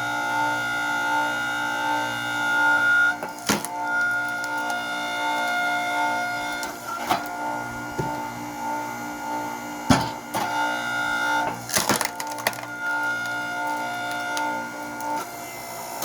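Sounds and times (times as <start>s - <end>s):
hydraulic machine whine: 0.0s - 16.0s
wood cracking: 3.3s - 5.6s, 11.6s - 15.2s.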